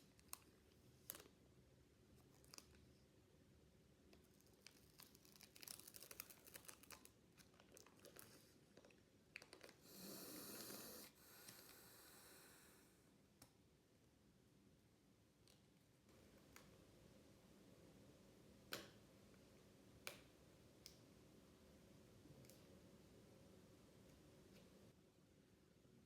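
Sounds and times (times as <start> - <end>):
card and foil crinkling: 2.2 - 2.8, 4.4 - 9.8
foil wrapper tearing: 4.6 - 8.3.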